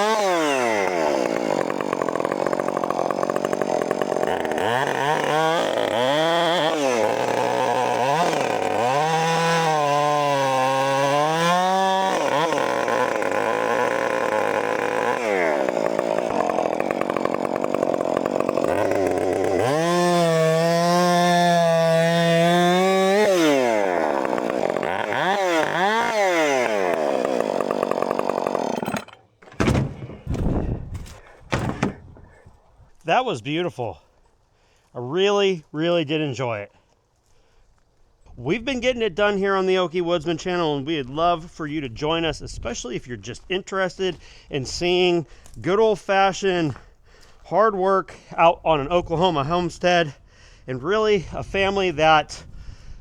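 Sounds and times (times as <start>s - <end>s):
chainsaw engine revving: 0.0s - 29.9s
short knocks: 29.4s - 32.3s.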